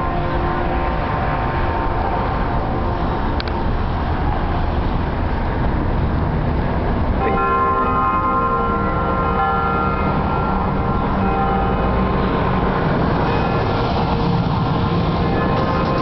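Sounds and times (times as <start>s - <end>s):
street traffic: 0.0s - 16.0s
church bells chiming: 7.2s - 16.0s.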